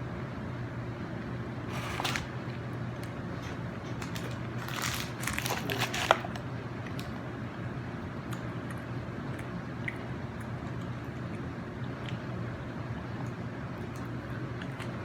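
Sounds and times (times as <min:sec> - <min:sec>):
steady low hum: 0:00.0 - 0:15.0
crunchy food chewing: 0:01.7 - 0:07.2.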